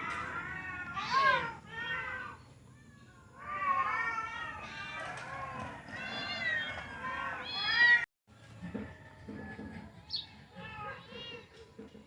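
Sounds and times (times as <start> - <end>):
cats meowing: 0.0 - 8.0, 10.5 - 11.6.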